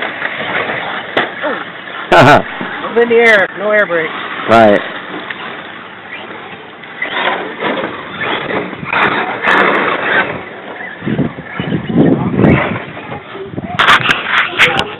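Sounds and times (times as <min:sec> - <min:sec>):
remote-control car driving on dirt: 0:07.0 - 0:13.1.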